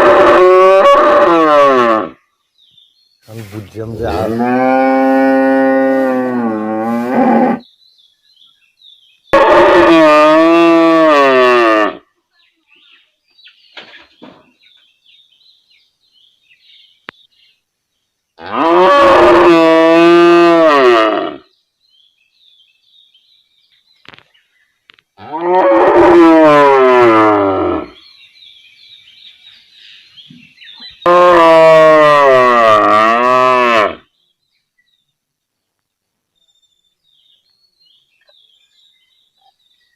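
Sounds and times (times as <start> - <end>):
cow mooing: 4.2 - 7.6, 18.4 - 21.4, 31.0 - 34.0.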